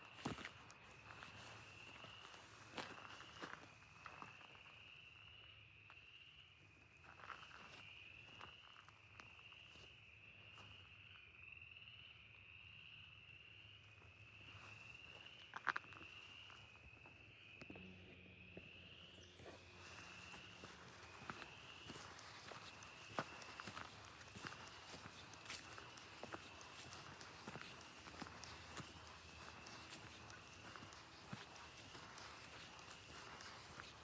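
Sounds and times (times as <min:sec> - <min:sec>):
footsteps crunching on trail: 0:00.1 - 0:03.6, 0:18.6 - 0:34.0.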